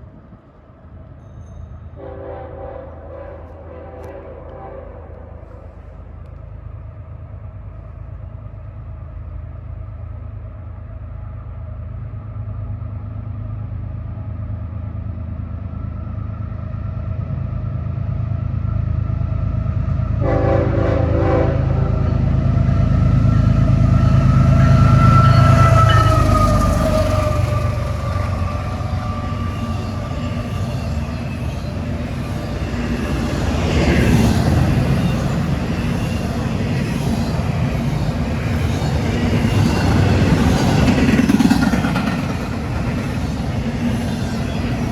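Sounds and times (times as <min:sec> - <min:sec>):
diesel locomotive rumble: 0:00.0 - 0:44.9
train air horn: 0:02.0 - 0:06.0, 0:20.2 - 0:22.2.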